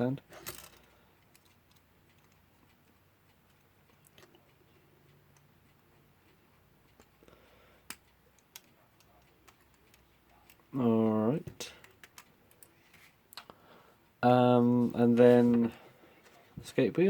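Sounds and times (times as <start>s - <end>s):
clock parts clicking: 0.3s - 12.7s.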